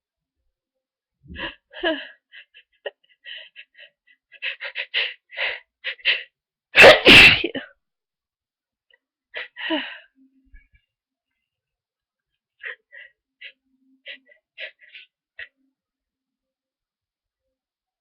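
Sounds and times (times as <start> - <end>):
person sneezing loudly: 6.8 - 7.6.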